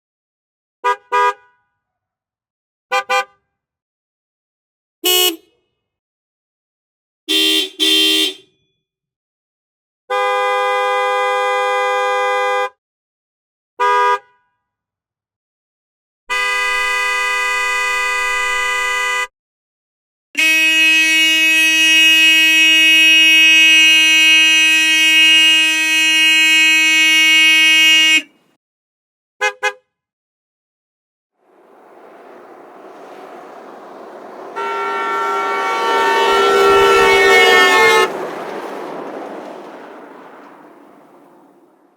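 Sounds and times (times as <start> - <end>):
car horn beeps and blasts: 0.8 - 1.6, 2.9 - 3.4, 5.0 - 5.5, 7.3 - 8.5, 10.1 - 12.7, 13.8 - 14.4, 16.3 - 19.3, 20.4 - 28.3, 31.5 - 40.6.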